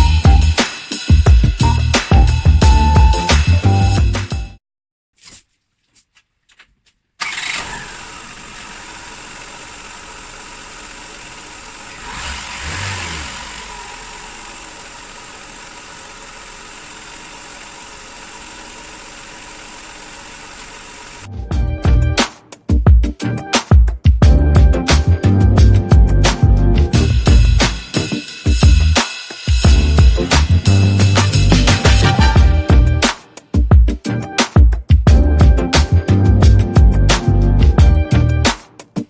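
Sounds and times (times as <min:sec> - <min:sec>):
car engine starting and idling: 0:07.2 - 0:21.3.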